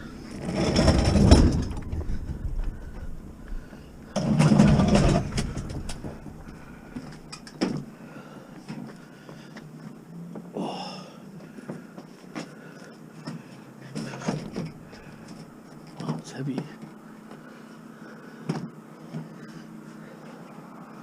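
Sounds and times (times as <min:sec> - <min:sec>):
vehicle engine running: 0:00.0 - 0:08.0.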